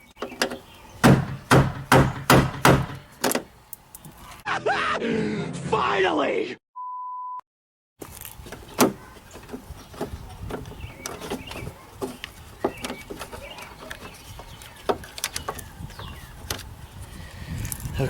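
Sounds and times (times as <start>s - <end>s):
door latch clicks and knocks: 0.3s - 3.5s
short beep: 6.8s - 7.4s.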